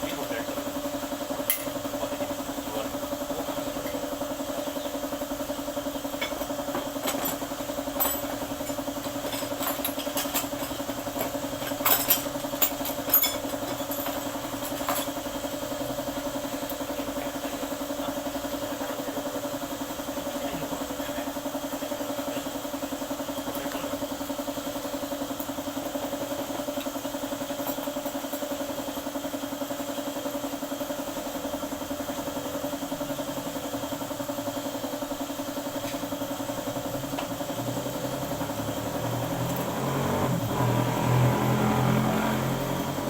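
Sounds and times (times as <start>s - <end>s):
diesel engine idling: 30.8s - 43.0s.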